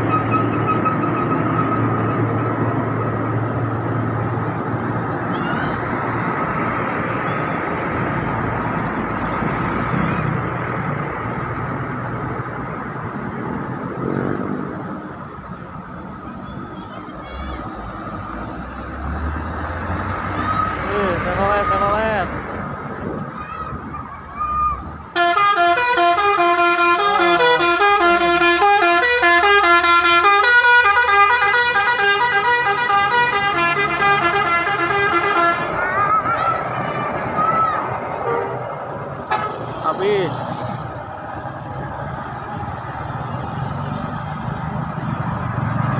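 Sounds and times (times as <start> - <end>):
heavy vehicle engine labouring: 0.0 - 45.9
multi-tone vehicle horn tune: 25.1 - 35.9.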